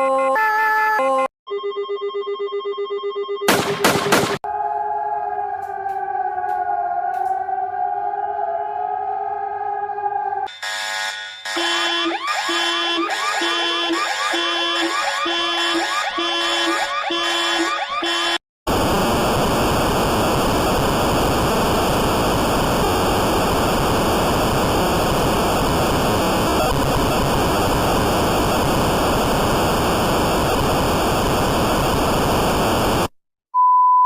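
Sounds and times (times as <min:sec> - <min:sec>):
pulsing electronic alarm tone: 0:10.5 - 0:18.4
loud static hiss: 0:18.7 - 0:33.1.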